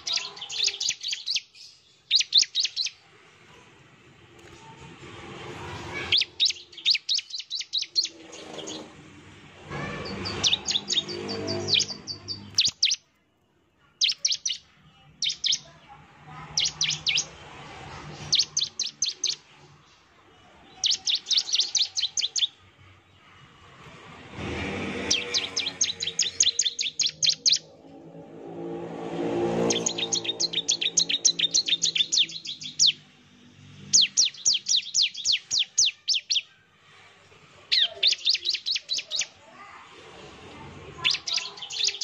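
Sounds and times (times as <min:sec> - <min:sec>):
bird singing rapid chirps: 0:00.0 - 0:03.0, 0:05.9 - 0:09.0, 0:09.7 - 0:13.1, 0:13.8 - 0:22.7, 0:24.9 - 0:28.2, 0:28.9 - 0:36.6, 0:37.7 - 0:39.4, 0:41.0 - 0:42.0.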